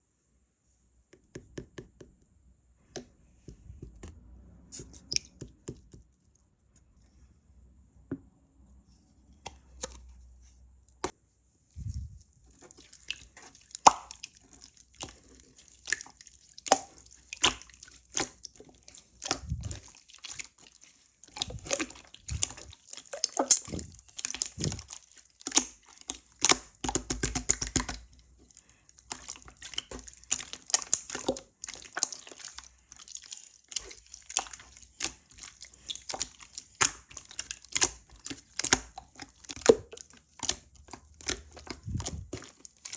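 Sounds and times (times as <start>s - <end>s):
slime squelching wet clicks: 5.0s - 5.9s, 12.5s - 42.9s.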